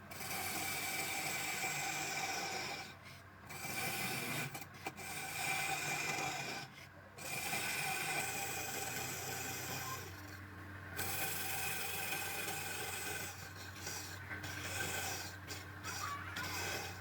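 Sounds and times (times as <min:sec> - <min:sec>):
tool rasping on spinning wood: 0:00.0 - 0:10.4, 0:11.0 - 0:17.0
wood lathe humming: 0:03.5 - 0:10.4, 0:11.0 - 0:17.0.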